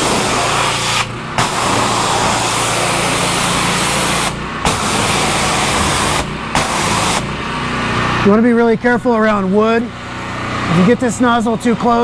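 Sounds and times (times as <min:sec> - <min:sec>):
water hissing from spray wand: 0:00.0 - 0:07.8
pressure washer engine running: 0:00.0 - 0:12.0.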